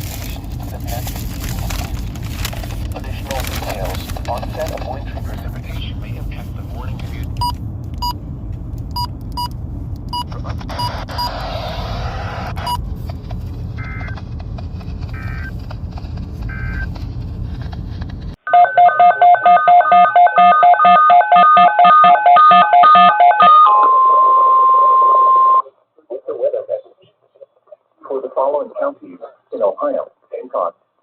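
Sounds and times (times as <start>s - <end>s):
low rumbling radio static: 0.0s - 18.4s, 23.8s - 31.0s
touch-tone beeps: 18.5s - 25.6s.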